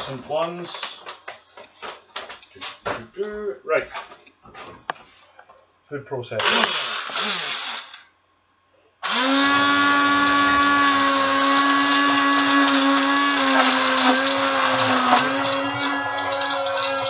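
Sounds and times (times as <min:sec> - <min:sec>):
food processor motor whining: 0:06.4 - 0:08.0, 0:09.0 - 0:17.0.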